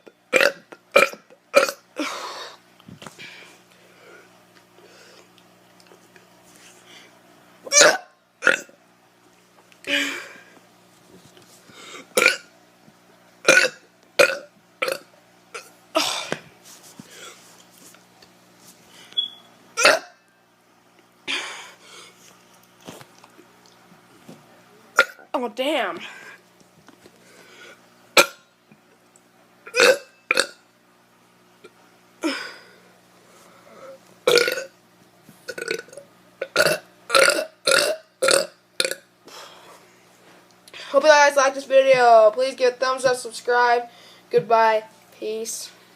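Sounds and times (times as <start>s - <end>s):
person burping: 0.3s - 2.1s, 7.7s - 8.8s, 12.1s - 12.5s, 13.5s - 16.4s, 19.8s - 20.2s, 25.0s - 25.3s, 28.2s - 28.4s, 29.7s - 30.6s, 34.3s - 34.8s, 35.5s - 39.1s.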